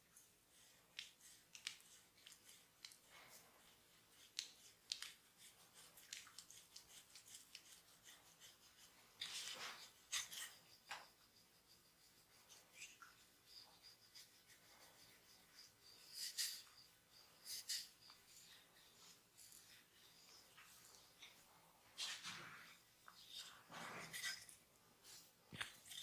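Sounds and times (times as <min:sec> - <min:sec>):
hands rubbing on skin: 0:00.9 - 0:21.4.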